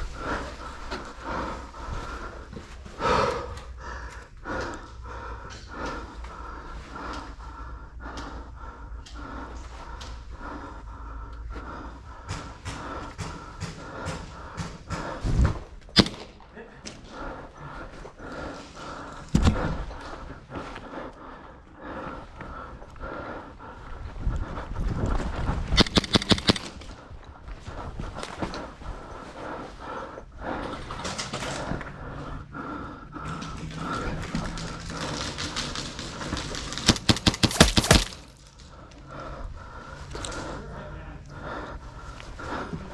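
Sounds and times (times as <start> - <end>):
person breathing heavily: 0.1 - 15.4, 37.4 - 38.3
movement noise: 37.4 - 38.4.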